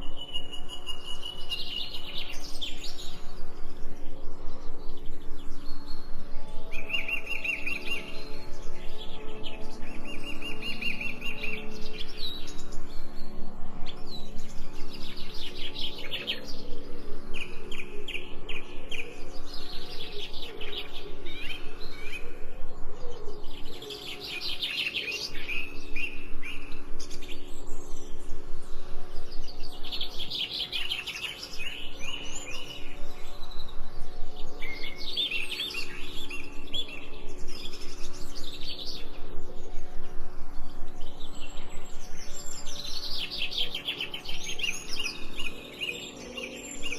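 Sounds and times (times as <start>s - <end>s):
steady low hum: 25.3s - 46.9s.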